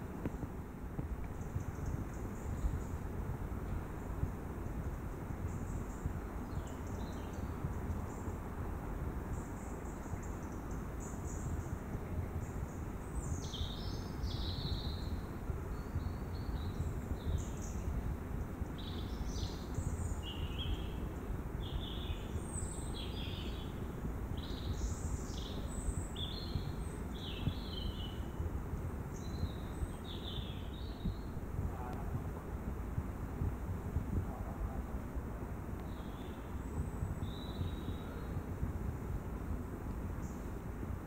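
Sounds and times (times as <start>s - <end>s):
crackling and popping noise: 0.0s - 9.2s, 31.0s - 37.8s, 38.4s - 41.0s
songbirds chirping and trilling: 0.0s - 41.0s.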